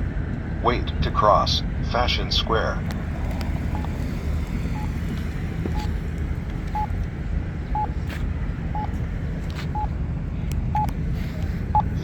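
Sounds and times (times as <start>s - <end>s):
steady low rumble: 0.0s - 12.0s
pedestrian signal beeping: 3.7s - 4.0s, 4.6s - 6.0s, 6.7s - 7.0s, 7.7s - 8.0s, 8.7s - 9.0s, 9.7s - 10.0s, 10.7s - 10.9s, 11.7s - 12.0s.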